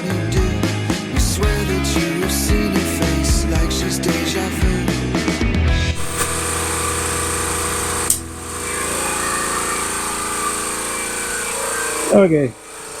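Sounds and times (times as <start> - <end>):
power tool grinding steel welds: 6.0 - 13.0.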